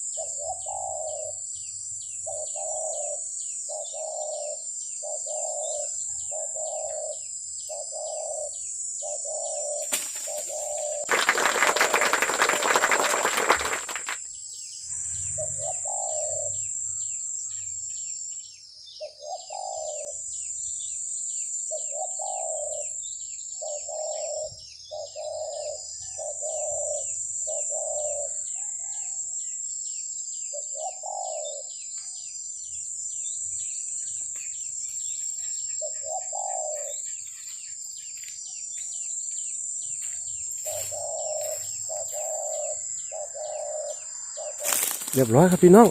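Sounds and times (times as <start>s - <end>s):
bird low calls: 0.0s - 1.4s, 2.2s - 14.2s, 14.9s - 17.3s, 19.0s - 20.3s, 21.7s - 23.0s, 23.6s - 29.0s, 35.8s - 37.6s, 40.6s - 45.9s
high insect drone: 0.8s - 18.6s, 32.6s - 45.9s
wing flapping: 9.8s - 14.2s, 44.6s - 45.9s
rapid insect ticking: 9.8s - 14.3s.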